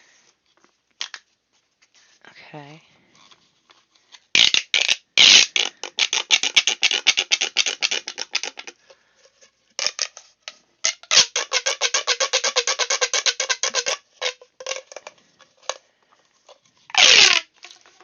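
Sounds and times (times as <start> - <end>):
pop tubes clicking: 1.0 - 1.2, 4.4 - 8.9, 9.8 - 15.8, 16.9 - 17.8.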